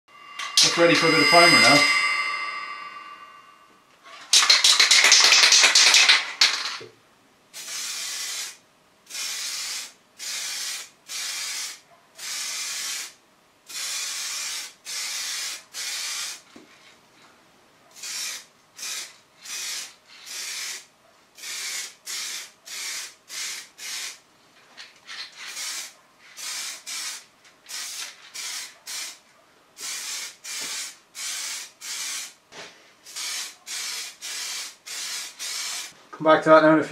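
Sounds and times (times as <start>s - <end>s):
aerosol can spraying: 7.6s - 16.4s, 18.0s - 24.2s, 25.4s - 29.2s, 29.8s - 32.4s, 33.1s - 35.9s.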